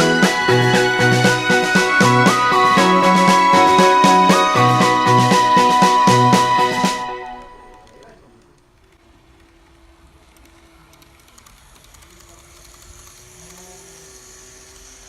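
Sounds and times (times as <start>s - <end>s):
wheels clicking over rails: 7.7s - 15.0s
model train motor whine: 8.8s - 15.0s.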